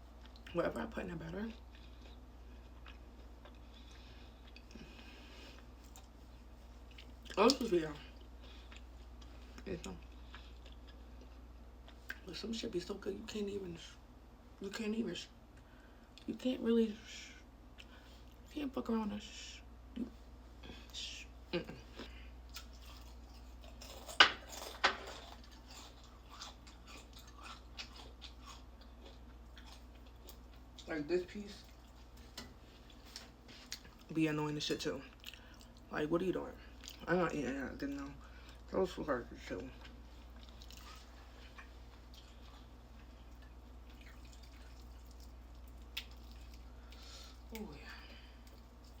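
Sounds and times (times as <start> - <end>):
chewing crispy food: 0.0 - 12.4, 21.6 - 49.0
low steady hum: 0.0 - 49.0
wet eating clicks and smacks: 40.3 - 47.7.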